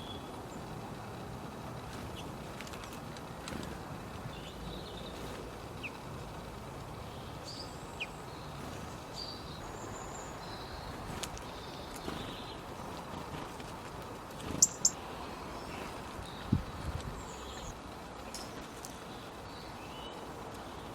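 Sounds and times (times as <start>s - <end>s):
steady background noise: 0.0s - 20.9s
high-pitched bird chirps: 14.6s - 15.0s.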